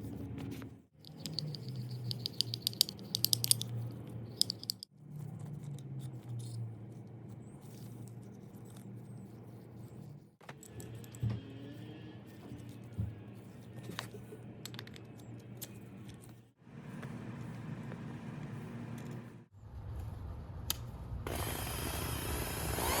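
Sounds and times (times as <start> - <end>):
metal parts clicking and rattling: 1.0 - 6.6.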